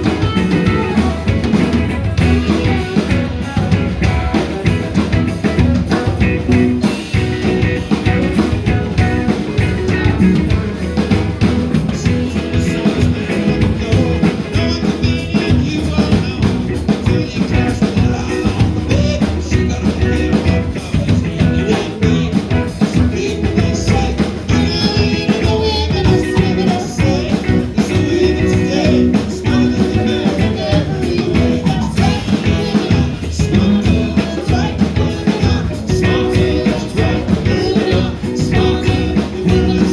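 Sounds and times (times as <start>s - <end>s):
person singing: 0.0s - 39.9s
rock and roll band playing: 0.0s - 39.9s.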